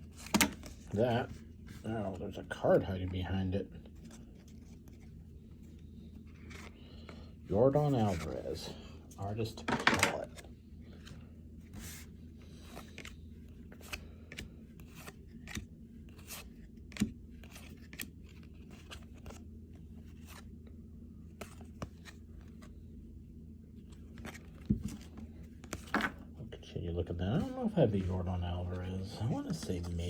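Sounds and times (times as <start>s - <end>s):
steady low hum: 0.0s - 30.0s
cards snapping and clicking: 13.8s - 18.1s.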